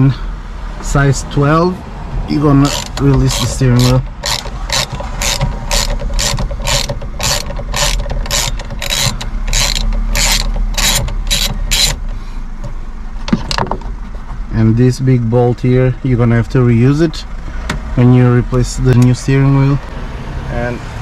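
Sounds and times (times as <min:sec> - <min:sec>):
ratchet wrench clicking: 0:02.6 - 0:12.0.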